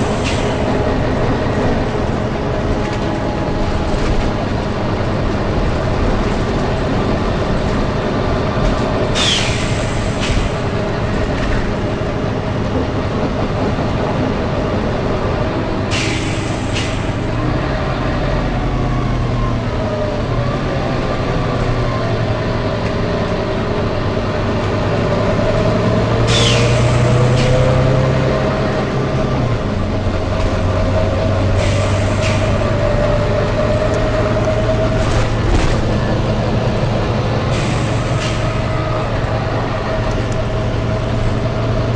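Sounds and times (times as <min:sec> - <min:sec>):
bus engine drone: 0:00.0 - 0:41.9
compressed air hisses: 0:09.2 - 0:10.5, 0:15.9 - 0:17.2.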